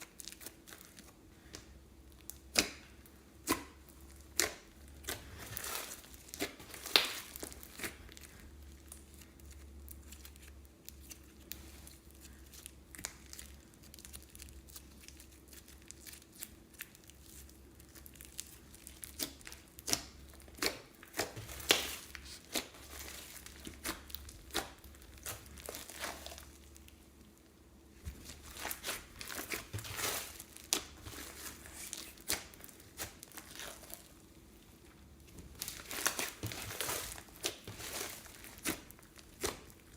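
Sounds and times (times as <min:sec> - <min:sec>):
slime being worked by hand: 0:00.0 - 0:39.9
plastic bags crinkling: 0:05.2 - 0:15.2, 0:21.0 - 0:27.0, 0:28.0 - 0:34.3, 0:35.1 - 0:39.9.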